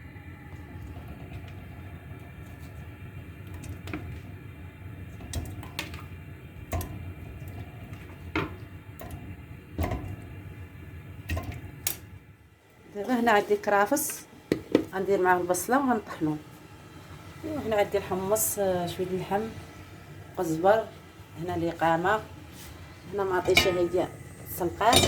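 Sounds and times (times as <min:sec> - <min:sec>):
steady low hum: 0:00.0 - 0:25.0
pots and utensils clinking: 0:23.3 - 0:25.0.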